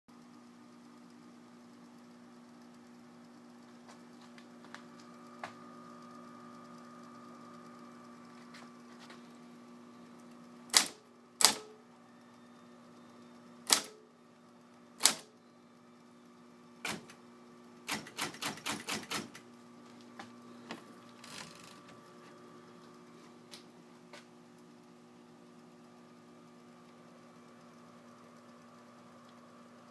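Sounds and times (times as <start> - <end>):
typewriter motor humming: 6.0 - 19.6, 20.4 - 23.6
light typewriter clicks: 10.7 - 11.8, 13.7 - 14.0, 15.0 - 15.3, 17.9 - 19.4
typewriter key strikes: 10.7 - 11.8, 13.7 - 14.0, 15.0 - 15.3, 16.8 - 17.2, 17.9 - 19.4.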